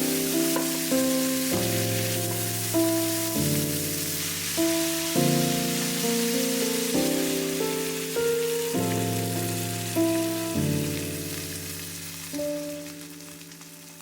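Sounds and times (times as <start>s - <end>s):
keyboard chords music: 0.0s - 13.6s
food sizzling hiss: 0.0s - 14.0s.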